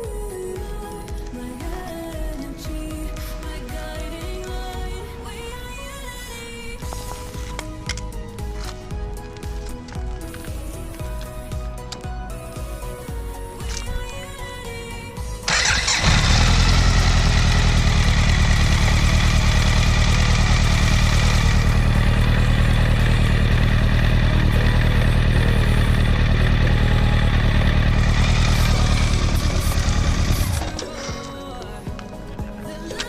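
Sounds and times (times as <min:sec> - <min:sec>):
motorcycle engine starting and idling: 0:13.1 - 0:32.0.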